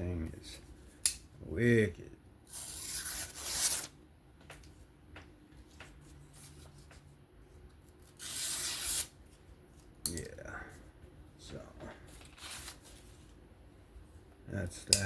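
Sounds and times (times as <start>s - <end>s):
knife slicing through paper: 8.2s - 9.1s.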